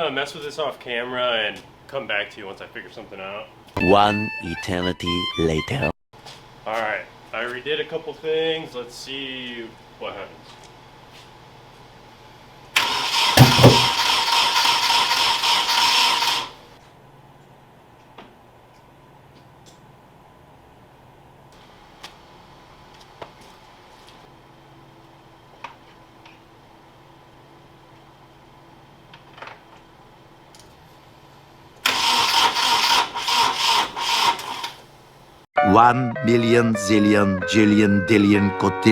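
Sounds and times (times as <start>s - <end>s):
starter motor cranking engine: 12.8s - 16.6s, 31.8s - 34.9s
loud thumps: 13.3s - 14.2s.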